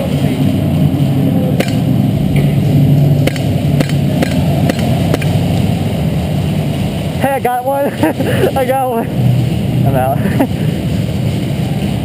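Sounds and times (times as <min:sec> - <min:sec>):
low background rumble: 0:00.0 - 0:12.0.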